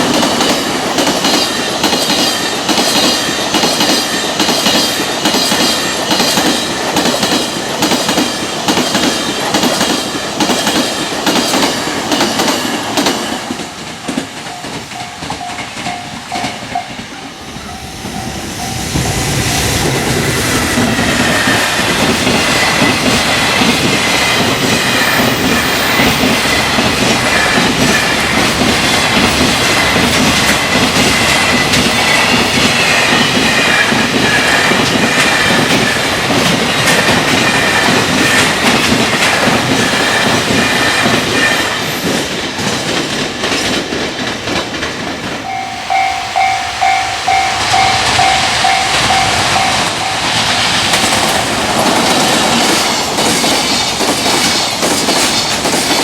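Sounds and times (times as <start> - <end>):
freight train wheels clicking: 0.0 - 56.0
high whine of train: 0.0 - 56.0
level-crossing bell ringing: 14.4 - 20.0, 45.4 - 50.7.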